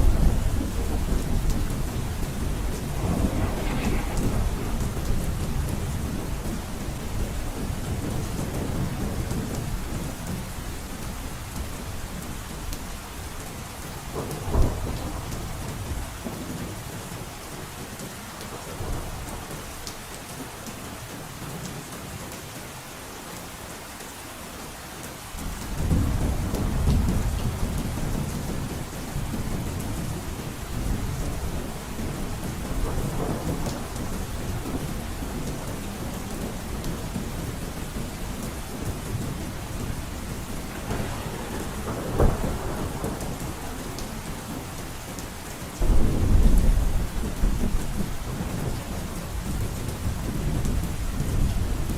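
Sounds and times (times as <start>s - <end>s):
sharp thunder crack: 0.0s - 8.6s, 40.7s - 43.8s, 45.8s - 48.0s
thunder rumbling: 0.0s - 10.6s, 14.1s - 16.4s, 25.7s - 51.9s
heavy rain drumming on a roof: 0.0s - 51.9s.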